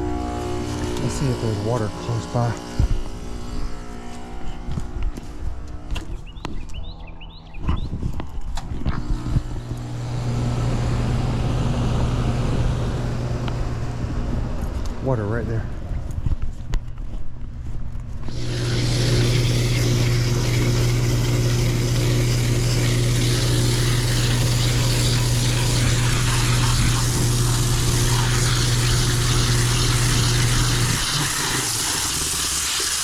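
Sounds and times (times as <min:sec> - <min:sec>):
heat pump hiss: 0:00.0 - 0:03.8, 0:18.2 - 0:33.0
heat pump electrical hum: 0:00.0 - 0:33.0.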